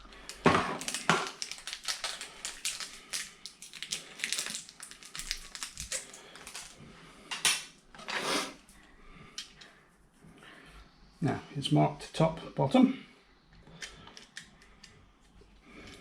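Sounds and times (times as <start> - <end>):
packaging rustles: 0.0 - 6.8
plastic packaging crinkling: 0.0 - 6.8.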